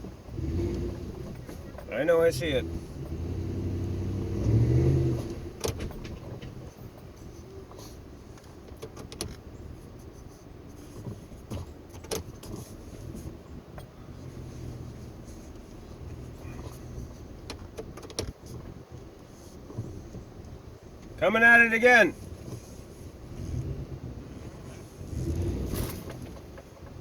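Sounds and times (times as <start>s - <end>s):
truck engine revving and idling: 0.0s - 7.8s, 12.6s - 17.7s, 21.0s - 27.0s.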